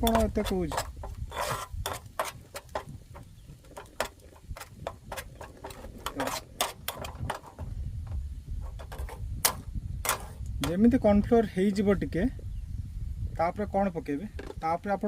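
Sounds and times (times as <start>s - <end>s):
spoon scraping cooking pot: 0.0s - 11.0s.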